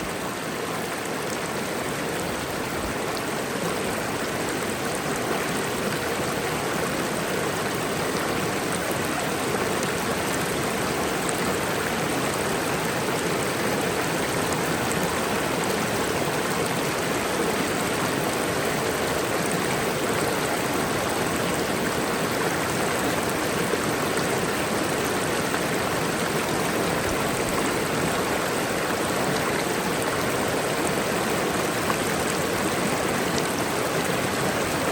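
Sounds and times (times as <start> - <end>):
waterfall roar: 0.0 - 34.9.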